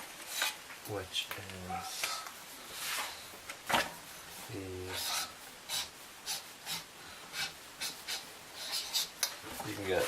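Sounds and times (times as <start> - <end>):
hands rubbing cardboard box: 4.3 - 10.0.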